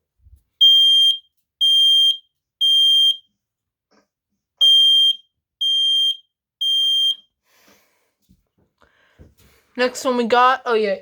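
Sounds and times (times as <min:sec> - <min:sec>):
smoke alarm beeping: 0:00.6 - 0:03.3, 0:04.6 - 0:07.4.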